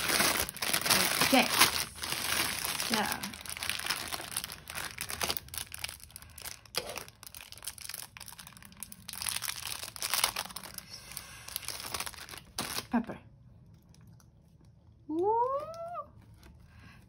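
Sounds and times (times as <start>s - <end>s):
packaging crinkling and rustling: 0.0s - 13.0s.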